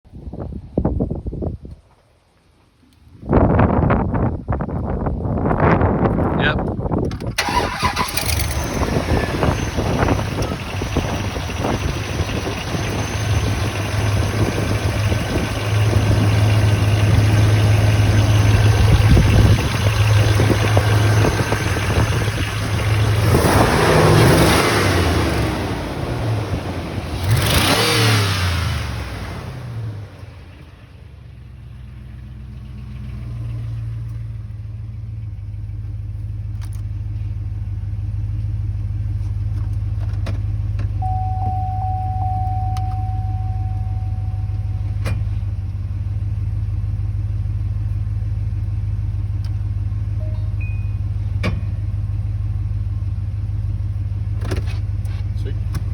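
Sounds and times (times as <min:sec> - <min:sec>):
car engine revving and idling: 0:05.1 - 0:55.9
steady tone: 0:41.0 - 0:45.2.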